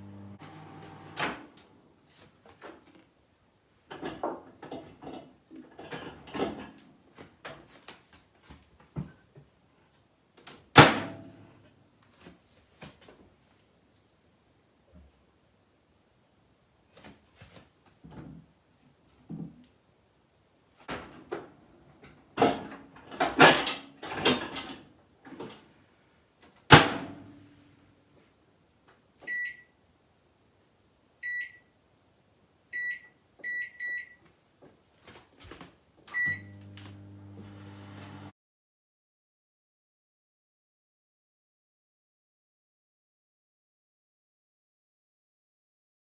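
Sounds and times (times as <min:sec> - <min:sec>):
microwave oven humming: 0:00.0 - 0:01.6, 0:36.1 - 0:38.3
microwave keypad beeps: 0:29.3 - 0:29.7, 0:31.2 - 0:31.6, 0:32.8 - 0:34.2, 0:36.2 - 0:36.6.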